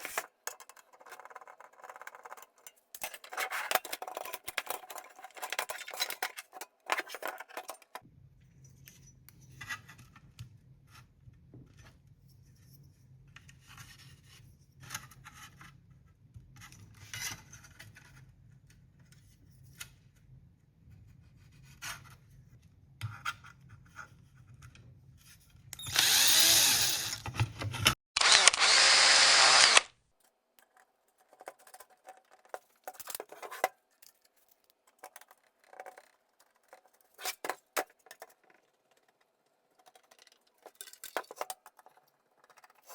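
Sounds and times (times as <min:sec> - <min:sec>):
power tool running: 0:25.8 - 0:27.4, 0:28.2 - 0:29.9.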